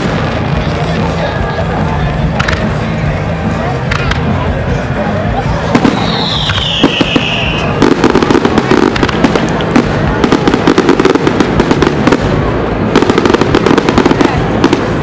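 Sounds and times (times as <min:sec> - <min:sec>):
firework cracks: 0:02.3 - 0:02.8, 0:05.6 - 0:15.0
rapid firework crackling: 0:05.4 - 0:15.0
firework whistle: 0:05.8 - 0:09.0.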